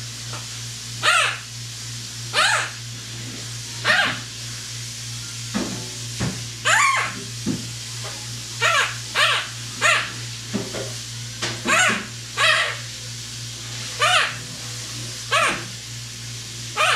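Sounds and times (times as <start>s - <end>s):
dog barking: 2.4s - 2.7s, 3.9s - 4.2s, 8.7s - 10.1s, 11.7s - 12.8s, 15.3s - 15.7s.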